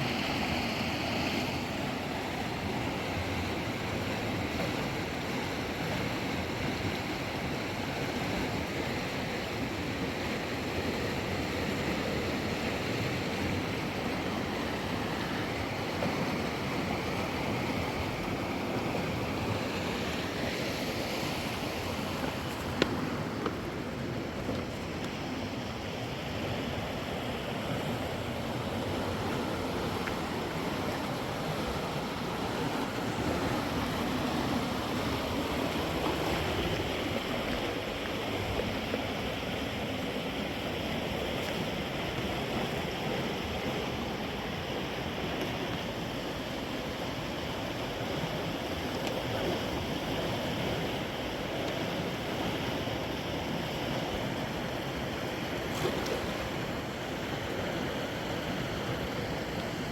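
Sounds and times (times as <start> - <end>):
river water rushing: 0.0 - 59.9.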